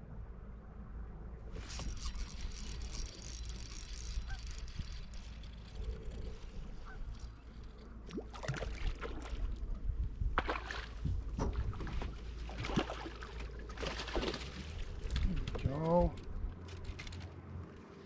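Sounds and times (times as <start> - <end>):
wind rumble on microphone: 0.0 - 17.7
water splashing against kayak: 6.8 - 15.3.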